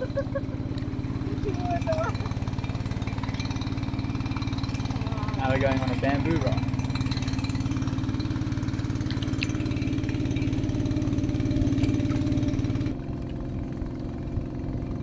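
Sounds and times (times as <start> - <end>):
small boat engine running: 0.0 - 15.0.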